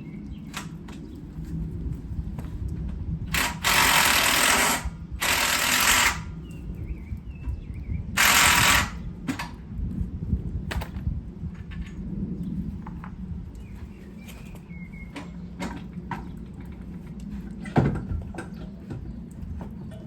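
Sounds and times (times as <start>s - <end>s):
power tool undoing bolt: 3.3s - 6.4s, 8.2s - 9.6s.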